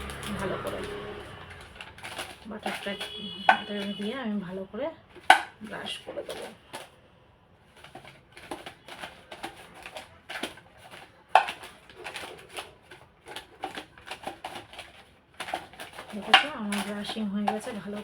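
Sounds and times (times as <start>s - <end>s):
paper rustling: 0.0s - 4.2s, 5.1s - 7.0s, 7.7s - 18.0s
pastry brush scraping paper: 7.8s - 18.0s.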